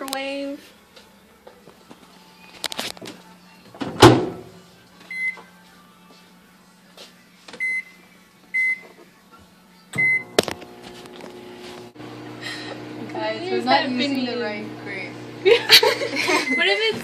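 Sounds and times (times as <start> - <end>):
short keypad beeps: 10.0 - 10.2.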